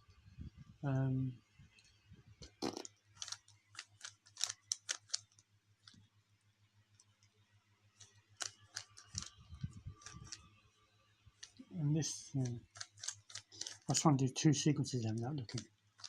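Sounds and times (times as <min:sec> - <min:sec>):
plastic puzzle cube clicking: 0:03.2 - 0:05.4, 0:08.4 - 0:09.4, 0:10.0 - 0:10.4, 0:12.6 - 0:13.9.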